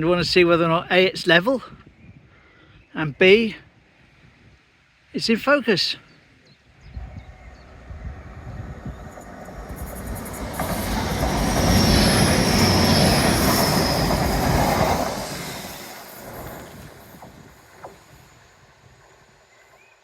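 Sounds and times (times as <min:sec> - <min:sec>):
train rumbling past: 0:06.9 - 0:20.0
high thin wheel squeal: 0:09.7 - 0:17.2.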